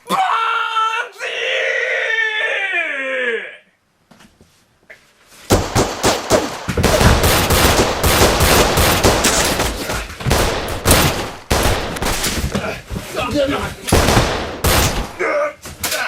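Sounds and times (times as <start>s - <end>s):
rapid continuous gunfire: 5.6s - 12.2s, 13.9s - 15.2s.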